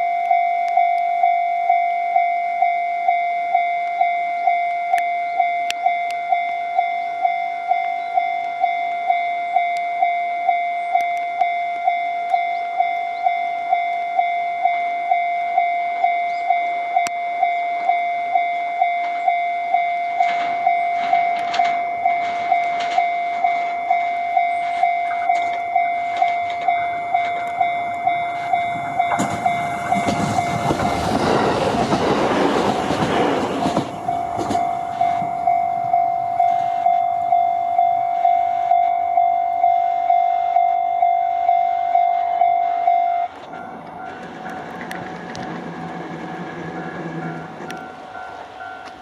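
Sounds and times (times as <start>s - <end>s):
electric train passing: 0.0s - 49.0s
level crossing bell clanging: 0.0s - 49.0s
train wheel clatter: 20.0s - 37.5s, 43.3s - 49.0s.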